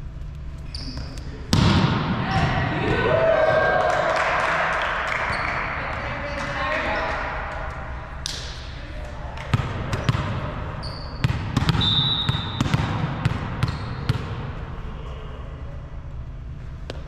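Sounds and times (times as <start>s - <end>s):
sneakers squeaking on floor: 0.3s - 1.4s, 5.2s - 7.0s, 9.6s - 14.4s
volleyball being struck: 1.5s - 3.1s, 11.2s - 14.4s.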